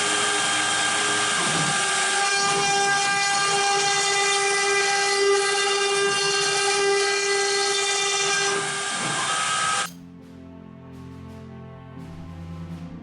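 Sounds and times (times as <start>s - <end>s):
soft music: 0.0s - 3.8s, 9.9s - 13.0s
router spindle whine cutting wood: 0.0s - 9.9s.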